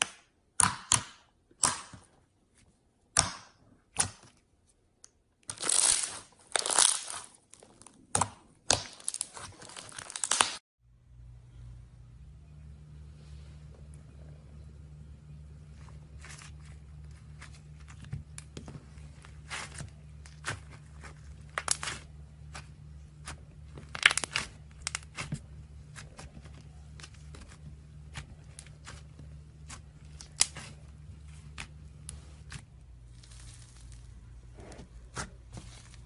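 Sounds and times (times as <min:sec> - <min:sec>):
slime crackling and popping: 0:05.5 - 0:07.3, 0:08.2 - 0:10.6, 0:19.5 - 0:30.8
low hum: 0:10.8 - 0:36.0.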